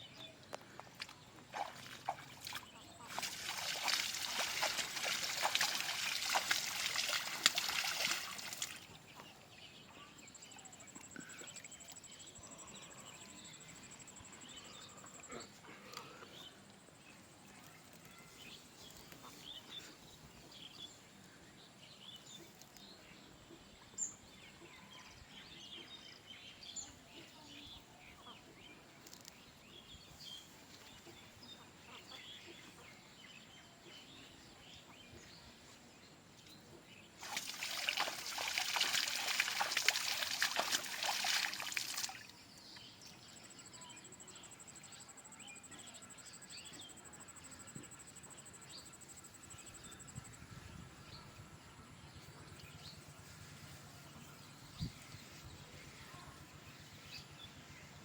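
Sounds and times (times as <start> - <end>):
water splashing and sloshing: 0.8 - 9.0, 37.2 - 42.4
low water trickle: 0.9 - 9.0, 37.2 - 42.4.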